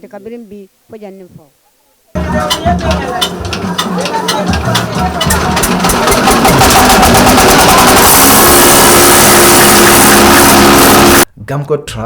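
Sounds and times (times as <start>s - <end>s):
grain milling machine running: 2.2s - 11.2s
steady hum: 2.2s - 11.2s.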